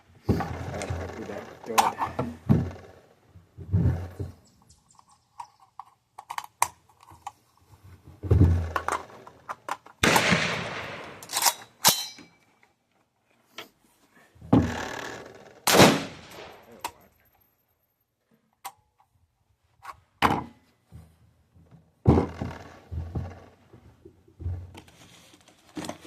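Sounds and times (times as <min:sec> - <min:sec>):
metallic clicks of gun action: 0:08.8 - 0:12.4
loud gunshots with echo: 0:10.0 - 0:11.2, 0:15.7 - 0:16.5.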